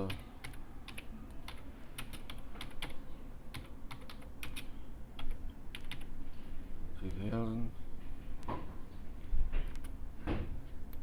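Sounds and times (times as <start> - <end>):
computer keyboard typing: 0.0 - 6.1.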